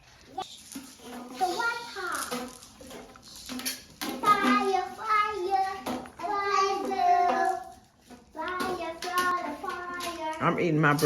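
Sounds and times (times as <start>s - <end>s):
child singing: 4.1s - 10.4s.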